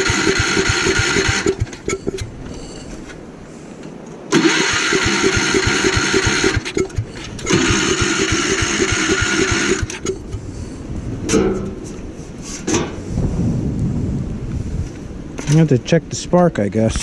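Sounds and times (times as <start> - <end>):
engine cranking over: 0.0 - 3.0, 4.3 - 10.4.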